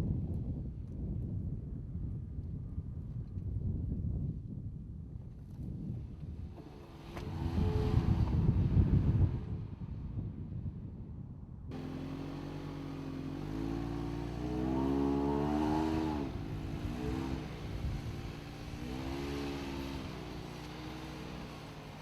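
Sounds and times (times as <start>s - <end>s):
car engine revving: 11.7s - 22.0s.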